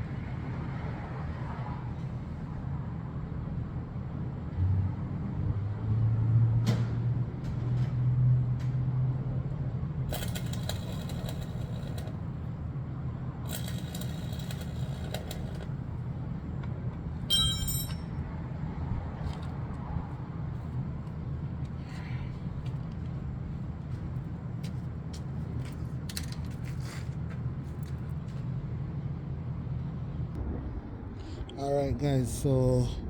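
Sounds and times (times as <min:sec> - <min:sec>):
low mechanical rumble: 0:08.6 - 0:33.0
rattling and clinking: 0:17.3 - 0:18.1
low hum: 0:29.2 - 0:33.0.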